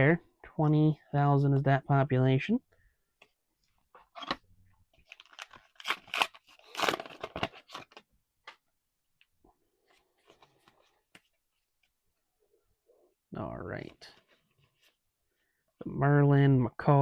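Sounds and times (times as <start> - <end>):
wrapper tearing and crinkling: 5.0 - 8.0.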